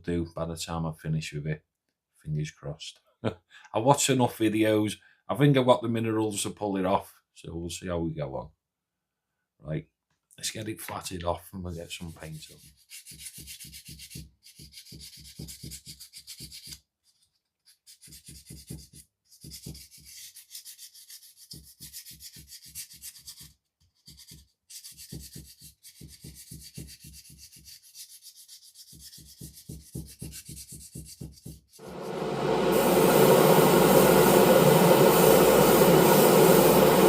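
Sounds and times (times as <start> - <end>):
sandpaper rubbing by hand: 11.7 - 37.0.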